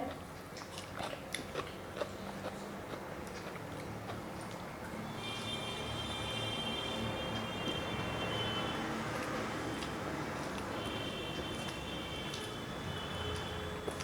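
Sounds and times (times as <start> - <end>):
chewing and mouth sounds: 0.0 - 5.0, 11.4 - 12.6, 13.3 - 14.0.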